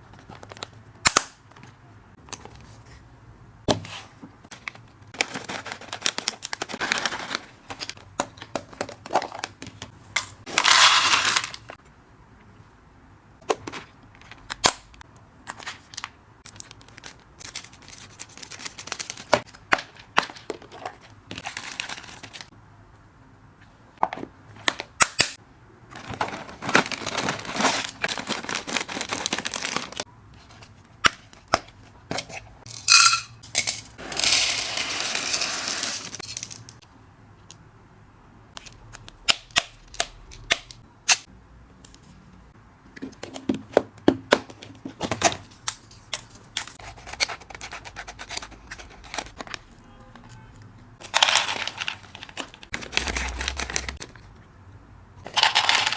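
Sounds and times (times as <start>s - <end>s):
plastic packaging crinkling: 5.1s - 8.0s, 15.8s - 19.5s, 20.6s - 22.5s, 26.0s - 30.0s, 51.0s - 54.2s.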